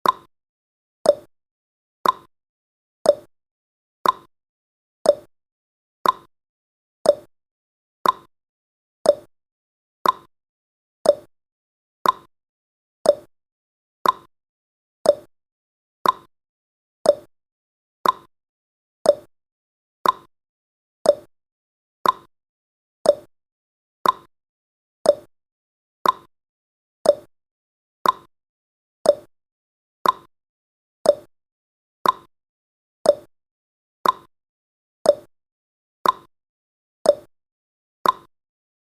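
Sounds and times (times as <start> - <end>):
timer tick-tock: 0.0 - 0.3, 1.0 - 1.3, 2.0 - 2.3, 3.0 - 3.3, 4.0 - 4.3, 5.0 - 5.3, 6.0 - 6.3, 7.0 - 7.3, 8.0 - 8.3, 9.0 - 9.3, 10.0 - 10.3, 11.0 - 11.3, 12.0 - 12.3, 13.0 - 13.3, 14.0 - 14.3, 15.0 - 15.3, 16.0 - 16.3, 17.0 - 17.3, 18.0 - 18.3, 19.0 - 19.3, 20.0 - 20.3, 21.0 - 21.3, 22.0 - 22.3, 23.0 - 23.3, 24.0 - 24.3, 25.0 - 25.3, 26.0 - 26.3, 27.0 - 27.3, 28.0 - 28.3, 29.0 - 29.4, 30.0 - 30.3, 31.0 - 31.3, 32.0 - 32.3, 33.0 - 33.3, 34.0 - 34.4, 35.0 - 35.4, 36.0 - 36.3, 37.0 - 37.4, 38.0 - 38.4.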